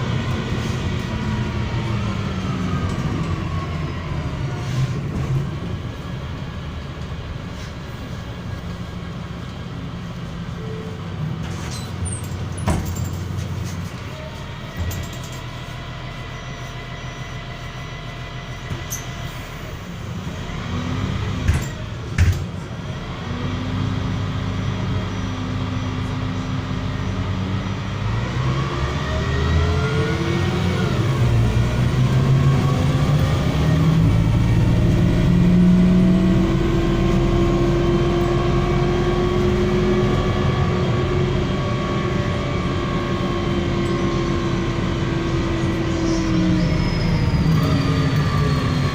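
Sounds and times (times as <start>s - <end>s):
bus engine running: 0.0s - 48.9s.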